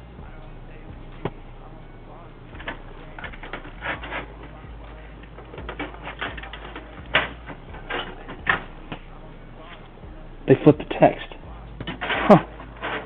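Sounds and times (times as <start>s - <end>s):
clicks and knocks of plastic parts: 5.3s - 8.7s.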